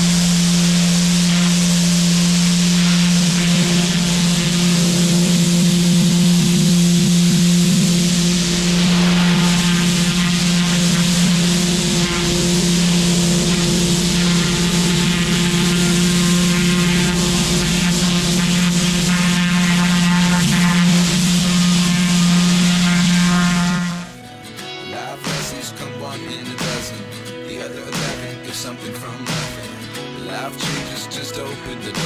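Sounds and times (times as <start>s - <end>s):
high-pressure water jet hissing: 0.0s - 24.3s
pressure washer engine hum: 0.0s - 25.6s.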